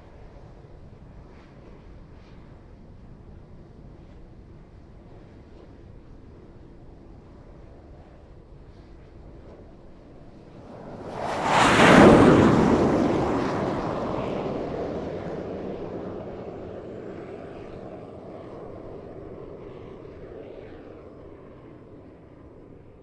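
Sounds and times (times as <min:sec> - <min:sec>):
jet aircraft roar overhead: 0:10.5 - 0:22.9.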